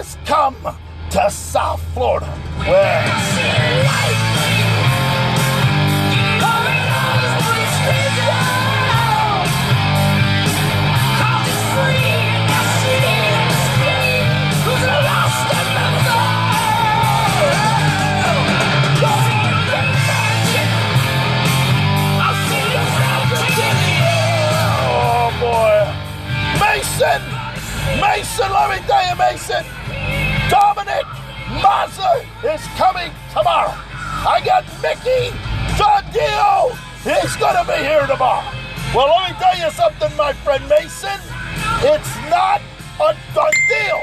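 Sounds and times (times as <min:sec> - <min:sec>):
heavy metal song: 0:02.3 - 0:28.8.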